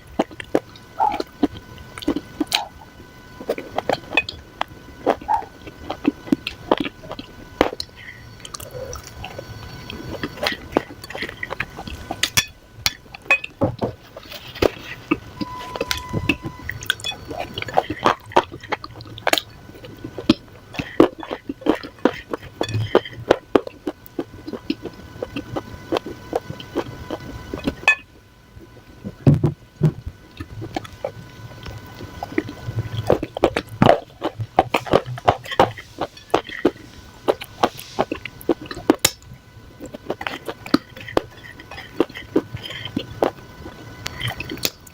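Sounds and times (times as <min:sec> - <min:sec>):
clay crumbs crunching by hand: 0:39.8 - 0:44.9.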